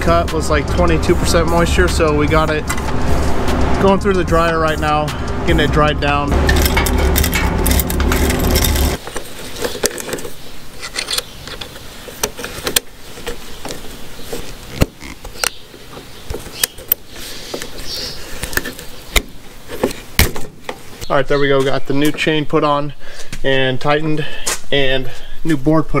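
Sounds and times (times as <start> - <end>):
grain dryer humming: 0.0 - 10.2
metallic clinks of tools and chain: 6.4 - 9.0.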